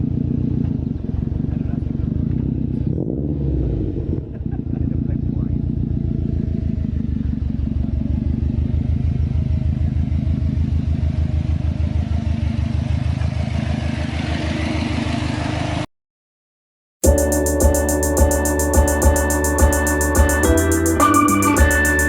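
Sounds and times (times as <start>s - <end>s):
car engine and road noise: 0.0s - 15.9s.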